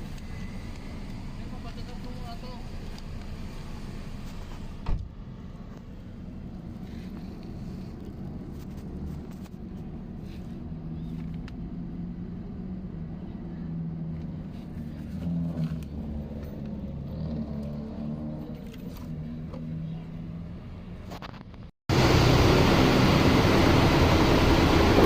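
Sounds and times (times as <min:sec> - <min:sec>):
car engine humming: 0:21.9 - 0:25.0.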